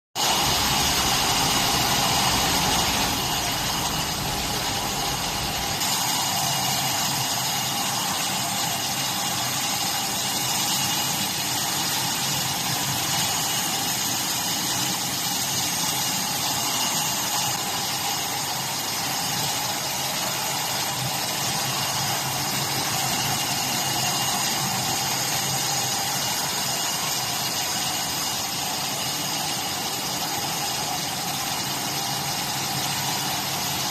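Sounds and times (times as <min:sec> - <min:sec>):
machine hum with whining tones: 0:00.2 - 0:33.9
deep rumble: 0:00.4 - 0:05.8.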